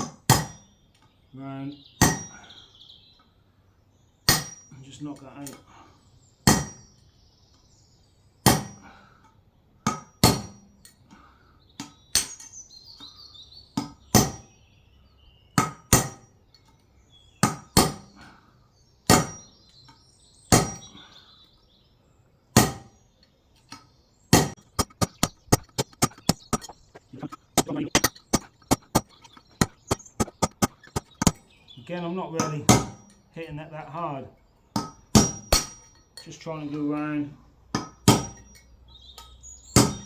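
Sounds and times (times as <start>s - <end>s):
hammer tapping a metal punch: 2.0s - 2.4s, 37.8s - 38.5s.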